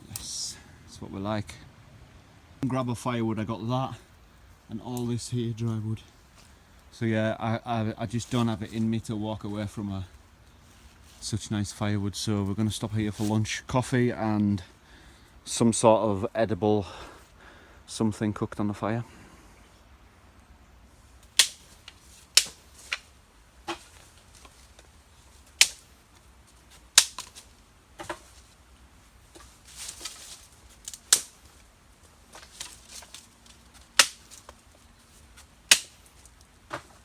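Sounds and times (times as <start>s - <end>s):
firewood sticks snapping: 21.2s - 37.0s.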